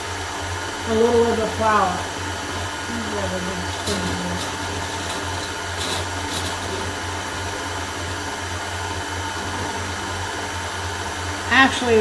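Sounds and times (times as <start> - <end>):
stand mixer beating batter: 0.0 - 12.0.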